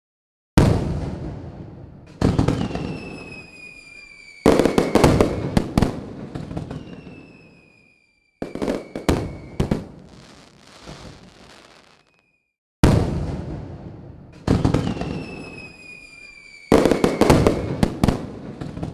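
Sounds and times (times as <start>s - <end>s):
fireworks bangs: 0.6s - 18.9s
firework cracks and pops: 2.0s - 7.8s, 8.4s - 12.3s, 14.4s - 18.9s
firework whistle falling in pitch: 2.6s - 5.6s, 6.6s - 12.5s, 14.8s - 17.8s
firework hissing fizz: 9.2s - 12.2s.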